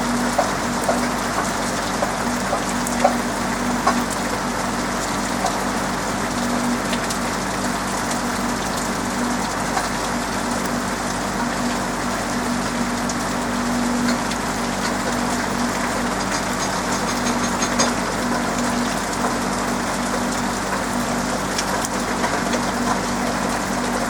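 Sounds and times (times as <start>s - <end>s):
rain falling on a roof: 0.0s - 24.0s.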